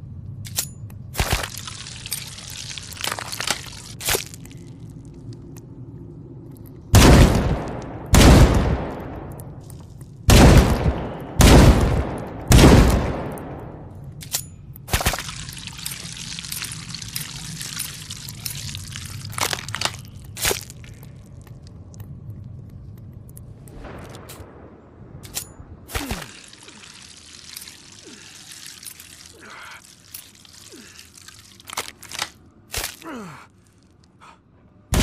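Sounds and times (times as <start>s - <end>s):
rifle shots echoing: 7.0s - 9.4s, 10.3s - 13.9s.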